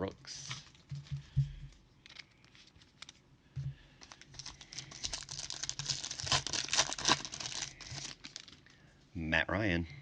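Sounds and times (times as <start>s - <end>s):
foil card pack crinkling: 4.0s - 8.6s.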